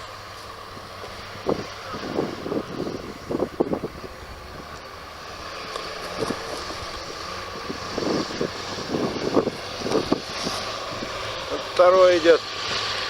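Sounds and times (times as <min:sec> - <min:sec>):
diesel engine running: 0:00.0 - 0:13.0
wind buffeting microphone: 0:00.6 - 0:04.8, 0:06.0 - 0:11.7.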